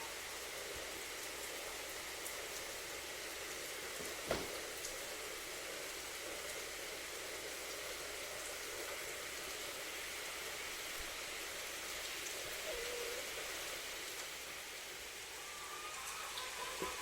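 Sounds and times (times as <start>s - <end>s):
rain falling: 0.0s - 17.0s
faint wavering call: 12.6s - 13.2s, 15.4s - 17.0s.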